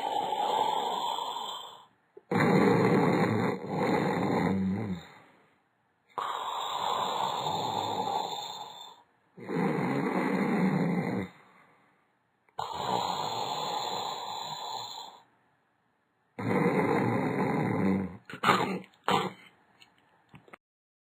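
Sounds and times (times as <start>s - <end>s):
person snoring: 0.0s - 5.4s, 6.1s - 11.6s, 12.6s - 15.3s, 16.4s - 19.4s.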